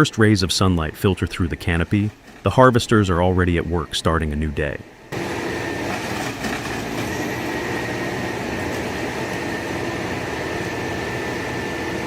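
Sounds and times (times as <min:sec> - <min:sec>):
harvester engine running: 0:05.0 - 0:12.0.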